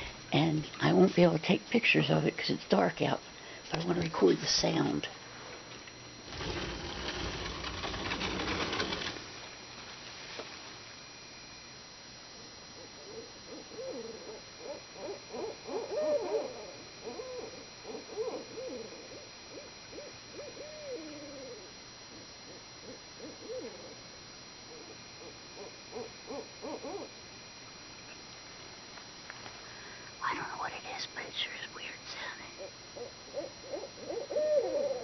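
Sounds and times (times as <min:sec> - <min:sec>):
owls hooting: 0:12.8 - 0:24.0, 0:24.7 - 0:27.2, 0:32.6 - 0:35.0.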